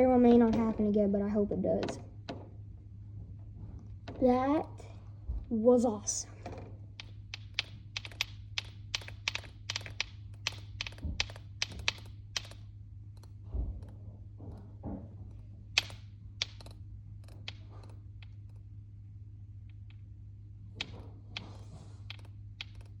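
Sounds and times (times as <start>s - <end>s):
low hum: 0.0s - 23.0s
sharp ticks and taps: 6.9s - 13.4s, 15.8s - 18.7s, 19.6s - 20.0s, 20.8s - 23.0s.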